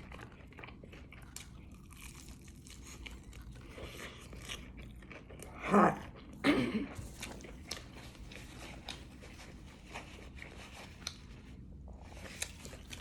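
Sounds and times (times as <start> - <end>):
chewing crunchy chicken wing: 0.0 - 13.0.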